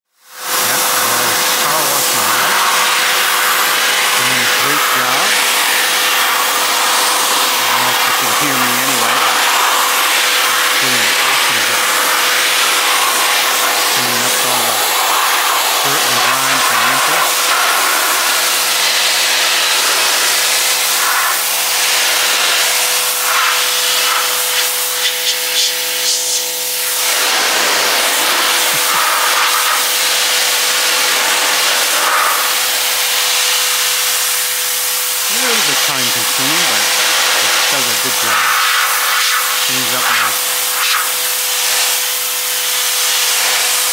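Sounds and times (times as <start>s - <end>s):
pressure washer motor tone: 0.2s - 43.9s
pressure washer spray hissing: 0.2s - 43.9s.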